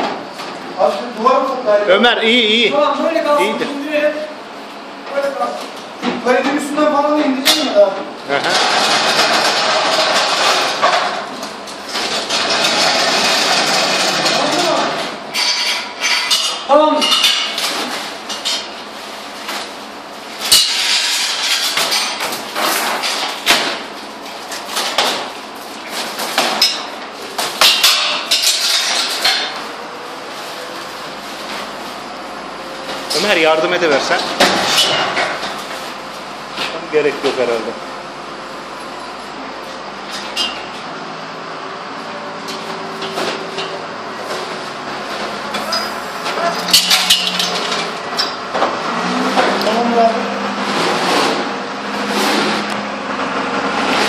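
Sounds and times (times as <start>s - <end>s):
steady background hum: 0.0s - 54.0s.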